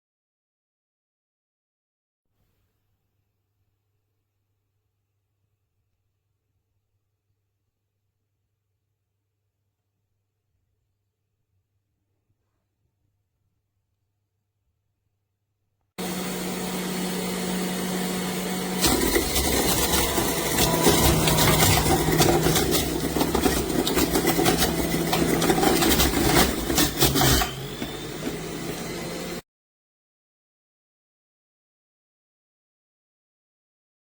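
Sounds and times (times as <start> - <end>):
juicer crunching and grinding produce: 16.0 - 29.4
juicer motor running: 16.0 - 29.4.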